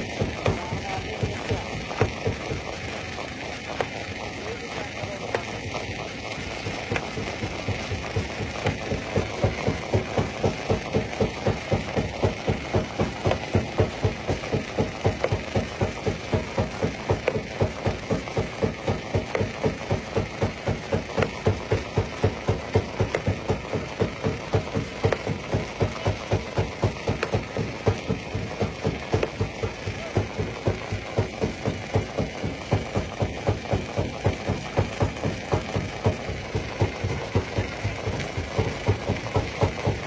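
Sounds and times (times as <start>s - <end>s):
mechanical hum: 0.0s - 40.0s
stone crusher jaw beating: 6.7s - 40.0s.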